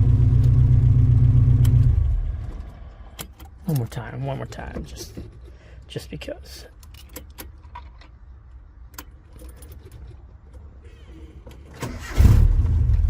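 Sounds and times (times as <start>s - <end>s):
engine cranking and starting: 11.7s - 13.0s.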